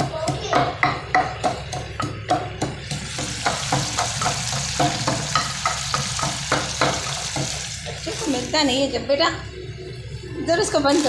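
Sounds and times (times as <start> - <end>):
spoon knocking against pot: 0.0 - 8.0
food sizzling: 1.0 - 11.0.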